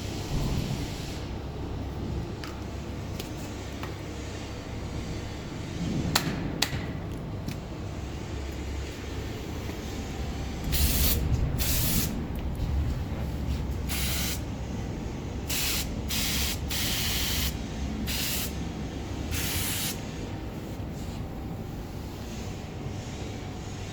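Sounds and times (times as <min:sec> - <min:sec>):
low machine hum: 0:00.0 - 0:23.9
aerosol can spraying: 0:10.7 - 0:12.2, 0:13.8 - 0:14.4, 0:15.5 - 0:18.6, 0:19.3 - 0:20.1.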